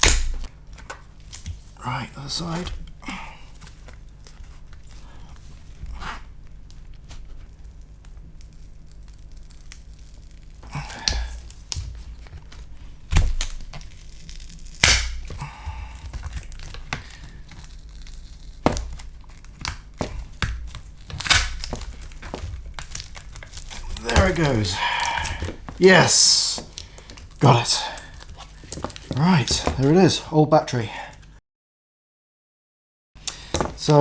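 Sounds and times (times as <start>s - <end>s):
battery cells cracking and tearing: 0.0s - 1.6s, 8.3s - 30.0s.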